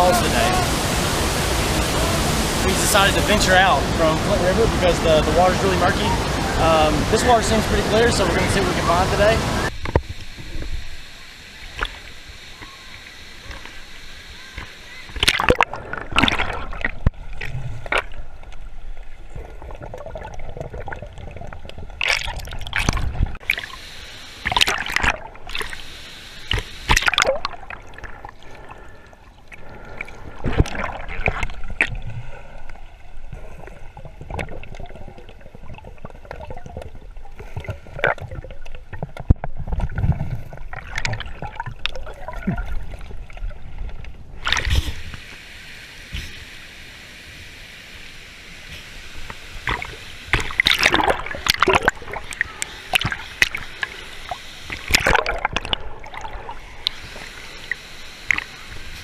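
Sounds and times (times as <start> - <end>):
water sloshing and splashing: 14.5 - 23.8, 24.4 - 25.9, 26.5 - 45.2, 49.6 - 59.0.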